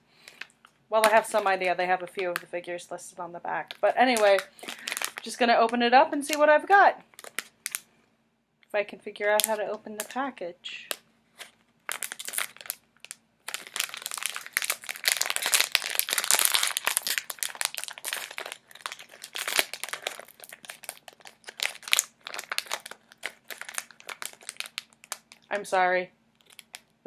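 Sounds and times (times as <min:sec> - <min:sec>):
plastic bag crinkling: 0:03.6 - 0:07.9, 0:09.2 - 0:10.2, 0:10.9 - 0:25.6, 0:26.4 - 0:27.0.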